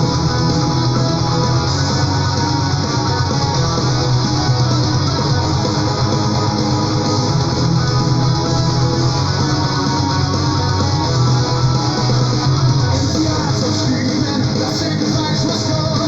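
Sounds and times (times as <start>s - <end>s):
metal guitars and bass: 0.0s - 16.0s.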